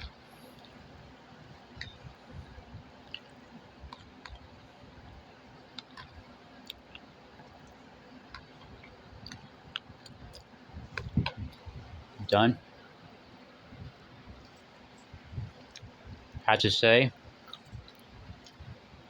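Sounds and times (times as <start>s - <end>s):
fans rumbling: 0.0s - 19.0s
eating clicks and ticks: 1.7s - 4.6s, 5.6s - 11.6s, 14.4s - 16.5s, 17.4s - 18.8s.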